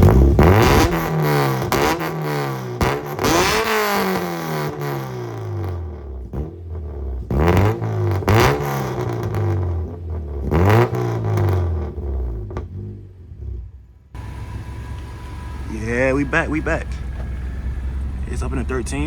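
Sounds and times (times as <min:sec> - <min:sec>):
car engine revving: 0:00.0 - 0:19.0.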